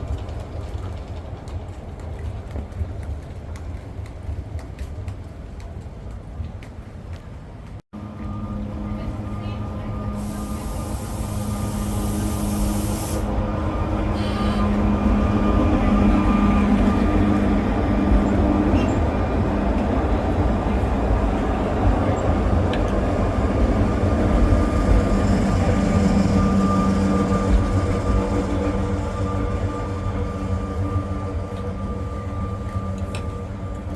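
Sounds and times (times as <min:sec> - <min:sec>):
electric tram rumbling on rails: 0:00.0 - 0:33.9
hiss: 0:10.2 - 0:13.3.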